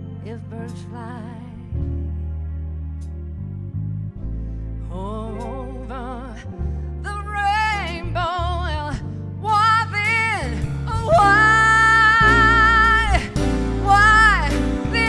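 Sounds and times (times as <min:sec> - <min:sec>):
keyboard and bass accompaniment: 0:00.0 - 0:15.0
woman singing with vibrato: 0:05.0 - 0:15.0.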